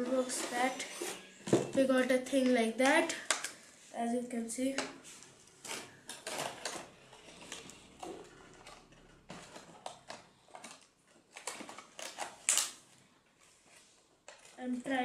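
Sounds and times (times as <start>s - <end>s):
toy packaging rustling and clicking: 0.0s - 3.6s, 4.6s - 15.0s
packaging snapping: 5.6s - 12.9s.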